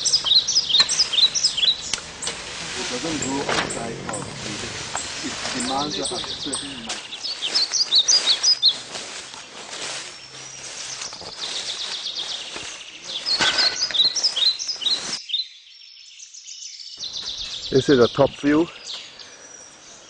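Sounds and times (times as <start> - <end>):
outdoor hiss: 0.0 - 7.2
birds chirping: 0.0 - 20.0.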